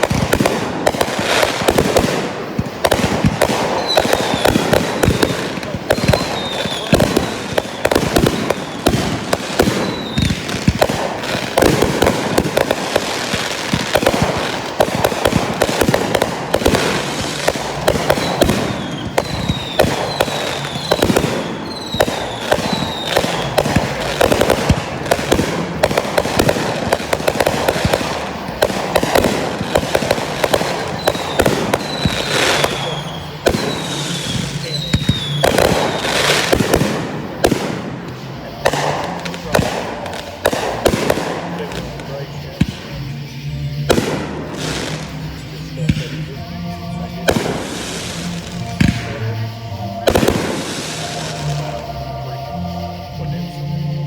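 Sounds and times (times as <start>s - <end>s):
fireworks pops and bangs: 0.0s - 52.0s
falling firework whistles: 0.0s - 54.0s.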